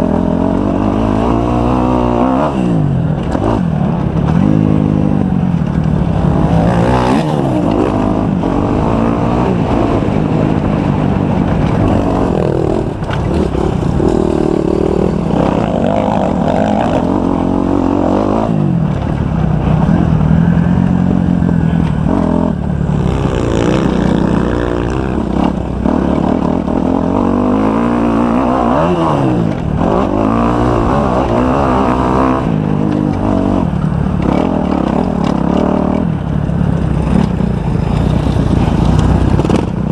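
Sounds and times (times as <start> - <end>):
motocross bike engine revving: 0.0 - 39.9.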